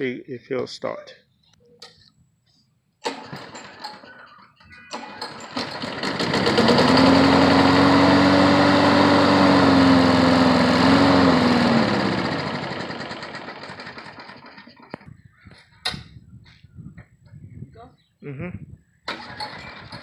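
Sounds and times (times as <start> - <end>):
lawn mower engine running: 3.0 - 15.1, 19.1 - 20.0.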